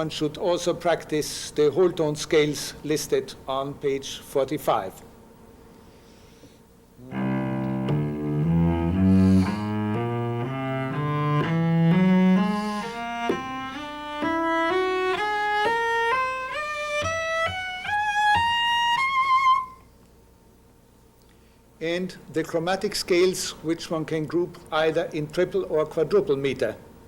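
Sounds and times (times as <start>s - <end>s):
solo cello playing scale: 7.0s - 19.8s.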